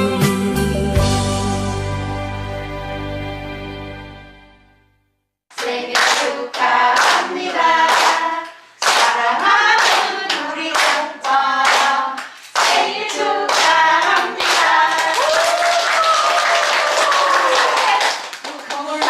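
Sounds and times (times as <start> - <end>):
rhythmic hand clapping: 5.5 - 19.0
voices singing: 5.6 - 15.2.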